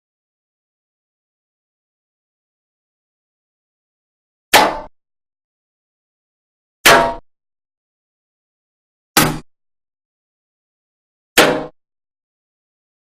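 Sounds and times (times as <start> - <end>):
bullet hitting thin metal: 4.6 - 4.9, 6.9 - 7.2, 9.2 - 9.5, 11.4 - 11.8.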